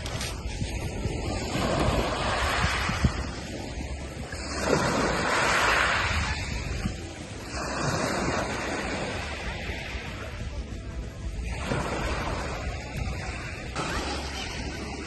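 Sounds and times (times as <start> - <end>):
sea waves breaking: 0.0 - 15.0
wind buffeting microphone: 0.0 - 15.0.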